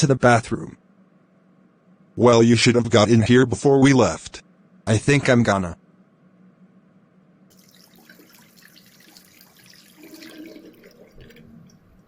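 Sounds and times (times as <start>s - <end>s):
faint trickle of liquid: 7.5s - 12.0s.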